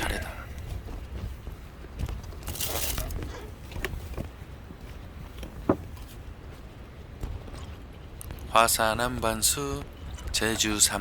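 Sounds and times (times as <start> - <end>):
steady low rumble: 0.0 - 11.0
crinkly rustle: 2.2 - 4.3.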